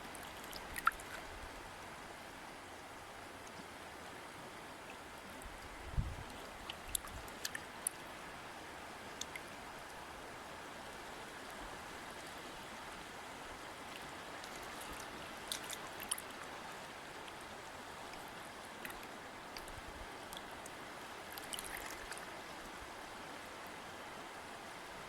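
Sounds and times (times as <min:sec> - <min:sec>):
water splashes and drips: 0:00.0 - 0:01.6, 0:04.9 - 0:12.9, 0:13.5 - 0:22.9
river water flowing: 0:00.0 - 0:25.0.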